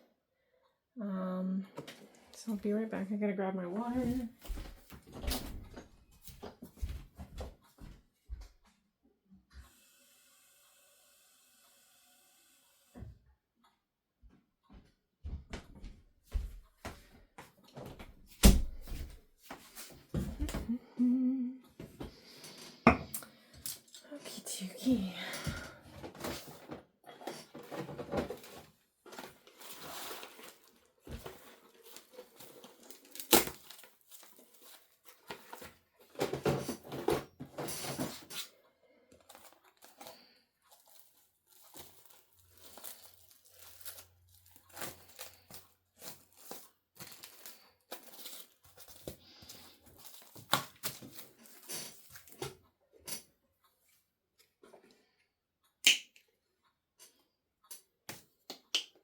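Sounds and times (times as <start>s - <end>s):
materials rustling and crinkling: 3.8s - 8.0s, 25.4s - 52.6s.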